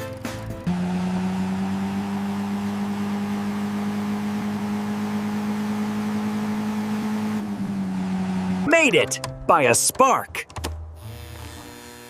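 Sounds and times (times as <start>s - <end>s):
electric hum: 10.8s - 12.0s.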